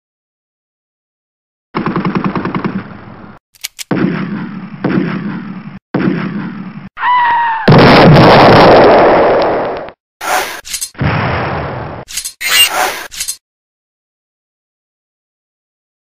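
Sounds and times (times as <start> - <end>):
rapid automatic gunfire: 1.8 - 2.9
loud blast: 7.7 - 9.3.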